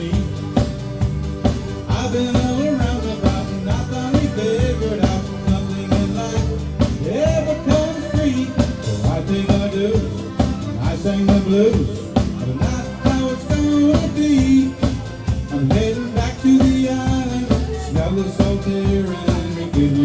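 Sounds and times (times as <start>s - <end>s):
drum kit beat: 0.0s - 20.0s
guitars and bass: 0.0s - 20.0s.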